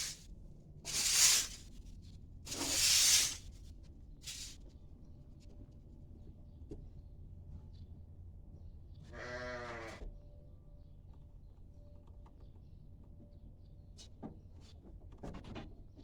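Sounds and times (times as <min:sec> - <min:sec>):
sheep bleating: 0:09.1 - 0:10.0.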